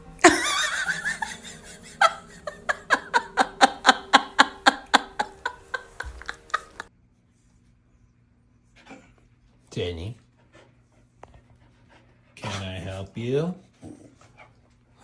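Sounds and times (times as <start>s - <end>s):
person laughing: 0.2s - 6.9s.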